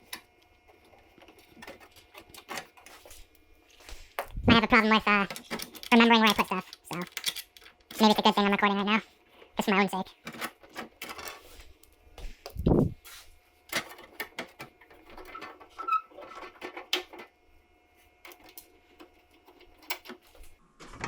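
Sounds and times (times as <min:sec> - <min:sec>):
allen key and bolts clicking: 0:06.9 - 0:08.0.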